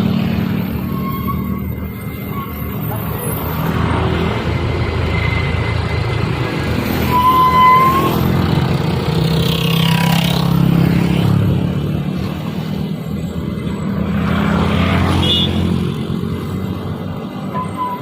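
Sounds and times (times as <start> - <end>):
truck diesel engine pulling hard: 0.0 - 18.0
brief high tone: 7.1 - 8.2, 17.5 - 18.0.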